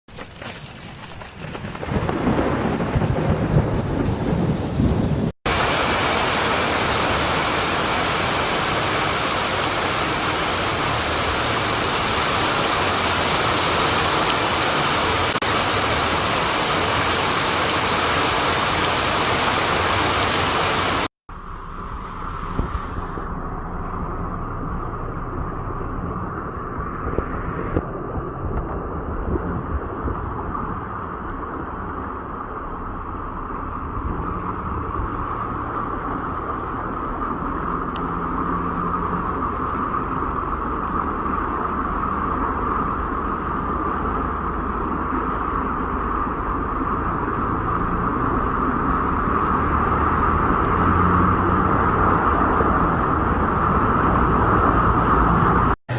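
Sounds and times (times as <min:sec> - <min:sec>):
rushing water: 0:00.1 - 0:55.8
heavy rain pouring: 0:00.1 - 0:55.9
low rumble: 0:21.3 - 0:50.7.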